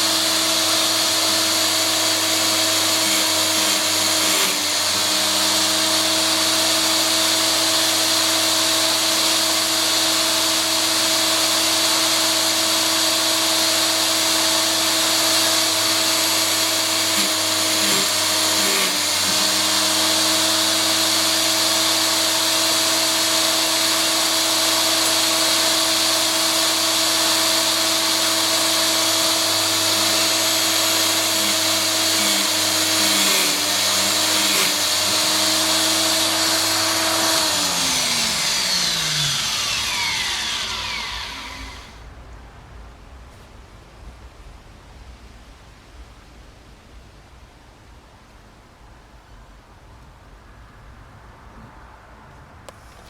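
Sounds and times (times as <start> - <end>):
grinding wheel whining: 0.0 - 42.0.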